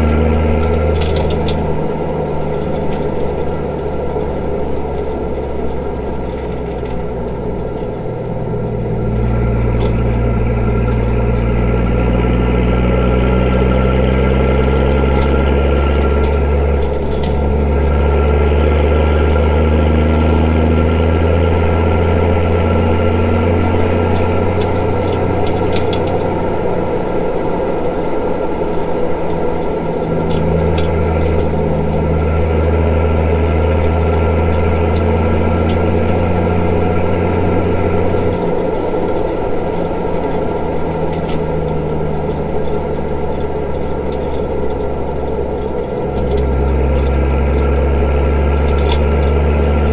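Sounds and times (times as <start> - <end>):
diesel engine running unmuffled: 0.0 - 49.9.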